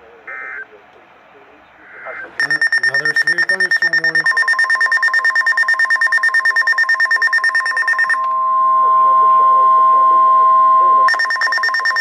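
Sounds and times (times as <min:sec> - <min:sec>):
steady warning alarm tone: 0:01.8 - 0:12.0
fast-pulsing electronic beep: 0:02.0 - 0:08.2, 0:11.1 - 0:12.0.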